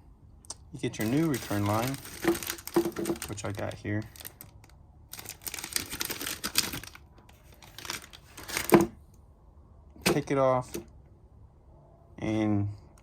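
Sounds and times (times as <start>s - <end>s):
plastic packaging crinkling: 1.0s - 9.0s.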